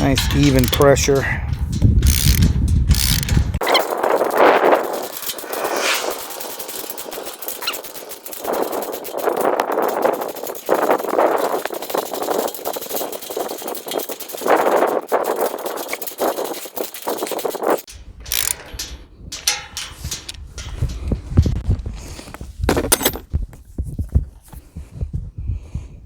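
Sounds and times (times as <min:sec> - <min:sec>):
ratchet wrench clicking: 0:00.1 - 0:21.1
low rumble: 0:01.2 - 0:07.5.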